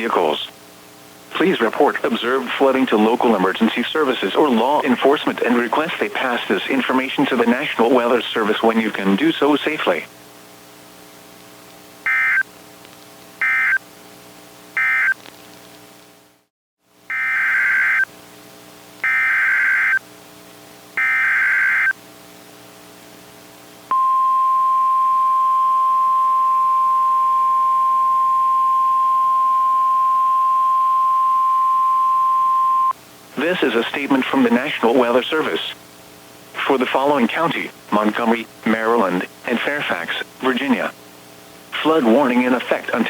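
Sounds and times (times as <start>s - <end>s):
data bursts: 12.1s - 12.4s, 13.4s - 13.8s, 14.8s - 15.2s, 17.1s - 18.1s, 19.0s - 20.0s, 21.0s - 21.9s
faint buzz: 17.1s - 33.4s
steady single-pitch alert tone: 19.0s - 20.0s, 21.0s - 22.0s, 23.9s - 32.9s.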